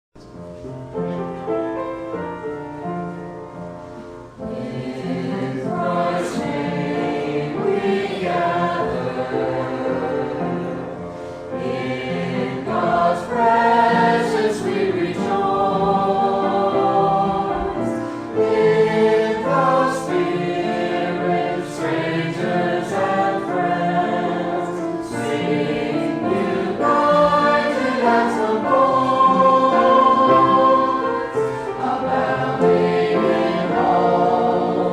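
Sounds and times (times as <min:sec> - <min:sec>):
church choir singing: 0:01.2 - 0:34.9.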